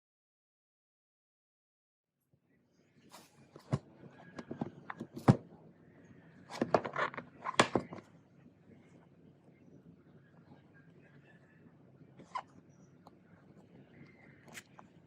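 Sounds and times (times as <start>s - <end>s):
box being handled: 3.2s - 5.5s, 6.5s - 8.0s.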